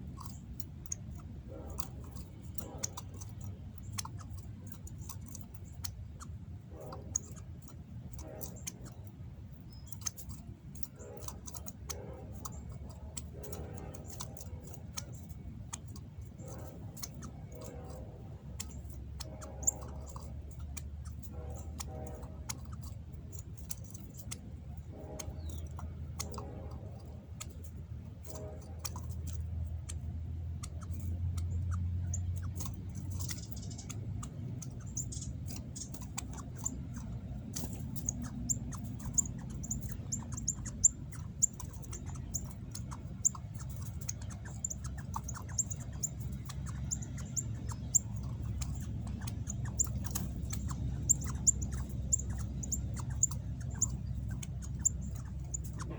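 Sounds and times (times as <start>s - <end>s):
sharp clicks: 0.0s - 9.1s, 9.7s - 55.9s
birds high chip notes: 0.0s - 55.9s.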